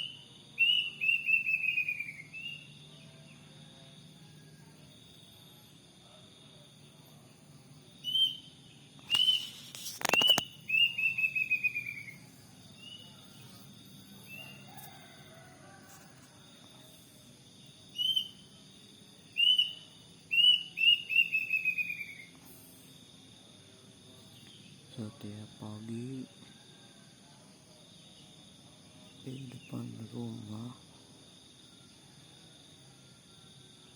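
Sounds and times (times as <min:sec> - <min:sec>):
high insect drone: 0:00.0 - 0:33.9
cuckoo calling: 0:09.0 - 0:12.3, 0:19.4 - 0:22.4.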